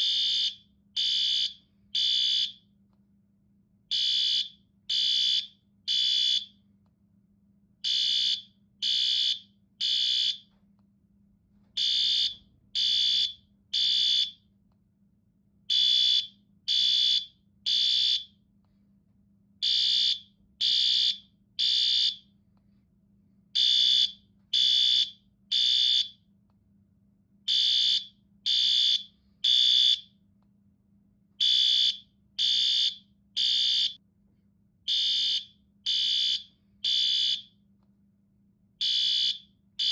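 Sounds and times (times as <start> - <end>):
fire alarm beeps: 0.0 - 2.7, 3.9 - 6.6, 7.8 - 10.6, 11.8 - 14.5, 15.7 - 18.4, 19.6 - 22.3, 23.6 - 26.2, 27.5 - 30.2, 31.4 - 34.0, 34.9 - 37.6, 38.8 - 39.9.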